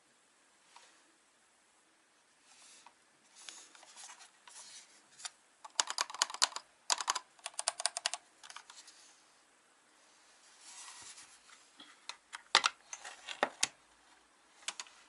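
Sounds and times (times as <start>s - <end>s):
mechanical keyboard typing: 5.7s - 8.7s.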